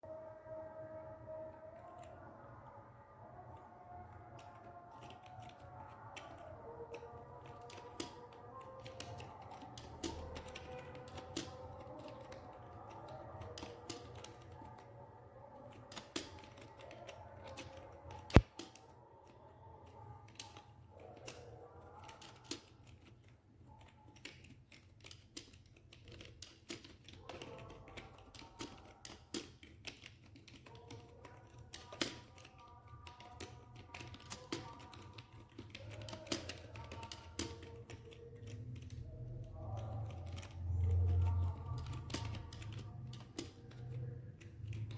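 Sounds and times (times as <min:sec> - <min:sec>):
keyboard keystroke clicks: 0:15.8 - 0:18.8, 0:23.8 - 0:44.9.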